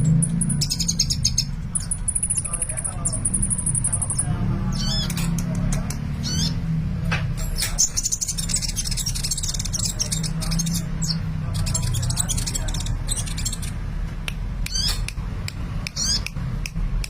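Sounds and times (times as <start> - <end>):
bird chirping and twittering: 0.0 - 16.7.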